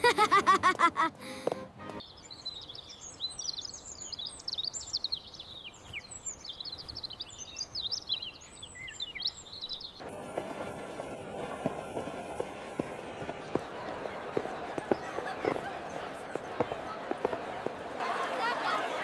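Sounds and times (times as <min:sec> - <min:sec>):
small birds chirping: 0:01.3 - 0:10.2.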